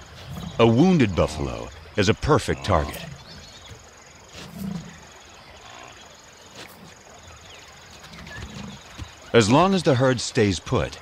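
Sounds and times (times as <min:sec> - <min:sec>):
large animal grunting: 0:00.0 - 0:01.8, 0:02.4 - 0:03.6, 0:04.3 - 0:05.1.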